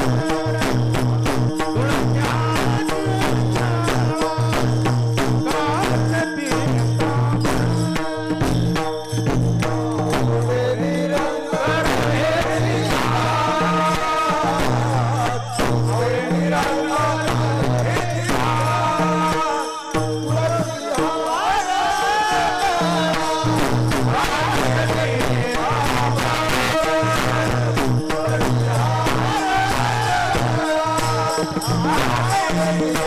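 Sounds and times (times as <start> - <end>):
jingling hand percussion: 0.0 - 33.0
person singing: 1.6 - 4.8, 10.4 - 33.0.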